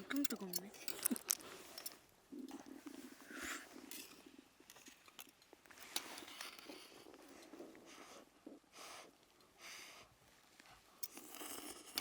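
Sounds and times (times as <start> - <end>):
utensil clicks and rustles: 0.0 - 7.8, 10.6 - 12.0.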